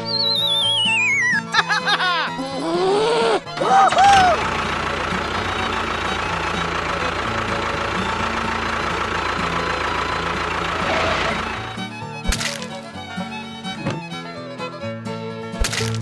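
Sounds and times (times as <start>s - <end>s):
engine idling: 3.4s - 14.6s.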